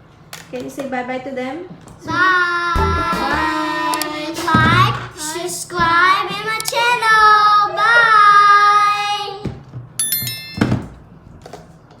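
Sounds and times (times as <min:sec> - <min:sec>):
music: 0:02.8 - 0:03.6
child singing long notes: 0:02.8 - 0:05.9.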